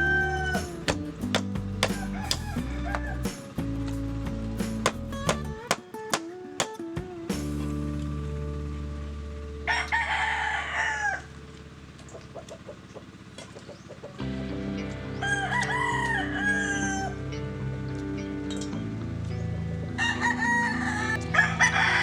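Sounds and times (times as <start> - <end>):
rooster crowing: 0.0 - 0.9, 1.9 - 3.2, 9.7 - 11.3, 15.2 - 17.2, 20.0 - 22.0
steady low drone: 7.4 - 12.4, 14.2 - 22.0.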